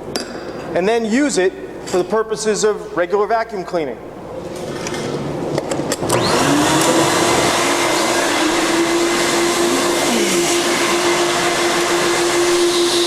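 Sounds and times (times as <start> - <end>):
vacuum motor whine: 5.9 - 13.0
suction rushing: 6.0 - 13.0.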